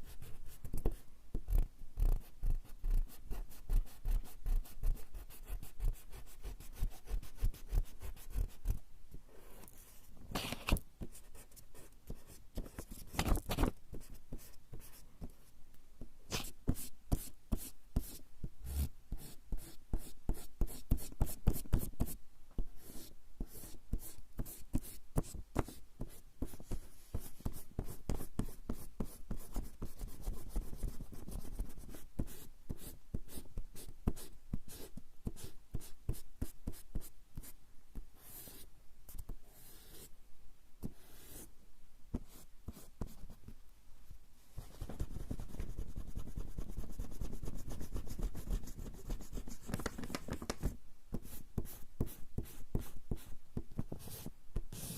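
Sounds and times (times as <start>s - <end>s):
eraser rubbing on paper: 54.0s - 54.9s.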